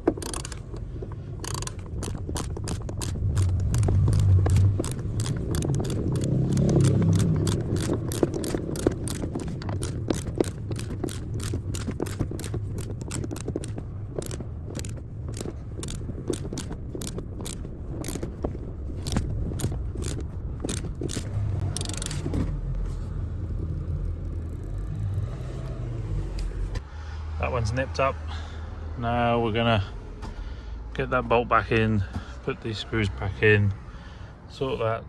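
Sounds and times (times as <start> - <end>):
ratchet spanner clicking: 0.0 - 22.5.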